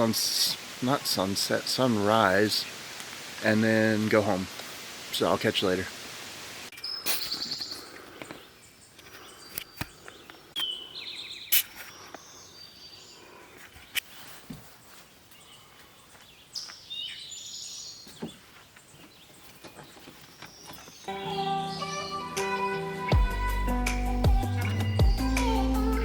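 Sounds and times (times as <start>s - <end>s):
bird chirps and trills: 6.7s - 14.0s, 16.3s - 22.6s
music: 21.1s - 26.0s.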